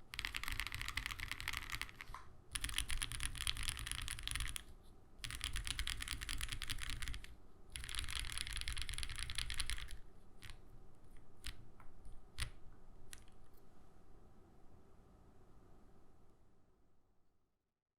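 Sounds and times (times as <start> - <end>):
mechanical keyboard typing: 0.0 - 11.6.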